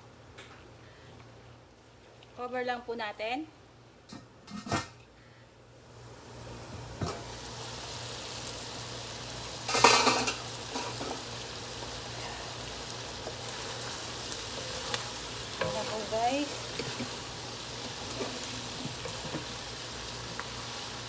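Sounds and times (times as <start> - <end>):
food sizzling in a covered pan: 5.8 - 21.0
cookware clattering: 9.7 - 11.2.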